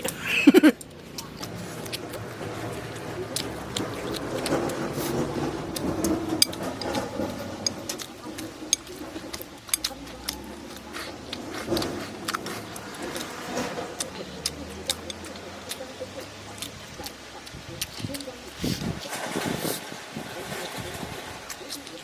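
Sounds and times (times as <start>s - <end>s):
close-up chewing and gnawing: 0.0s - 22.0s
chopsticks clicking on bowl: 5.7s - 13.3s, 14.0s - 18.0s.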